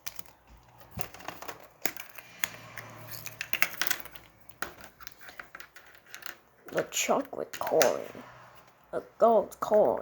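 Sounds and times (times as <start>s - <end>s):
candy wrappers crinkling: 0.0s - 2.3s
plastic toys clicking and tapping: 0.0s - 8.1s.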